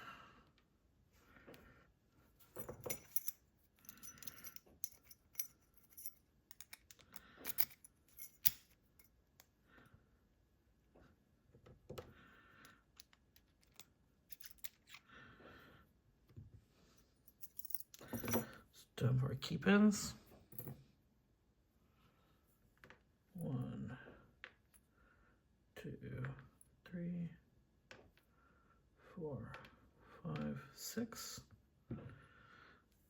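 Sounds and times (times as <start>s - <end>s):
small metal parts clinking: 2.5s - 9.5s, 12.9s - 15.0s, 17.3s - 18.6s.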